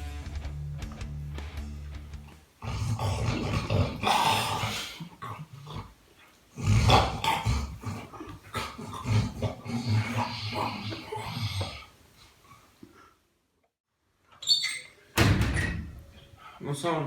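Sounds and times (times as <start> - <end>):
person snoring: 2.6 - 5.9, 6.6 - 11.9.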